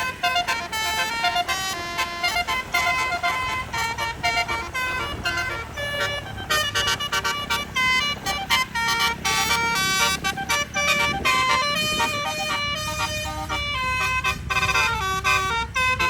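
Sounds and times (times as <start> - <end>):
air horn trumpets playing melody: 0.0 - 16.0
low engine rumble: 0.0 - 16.0.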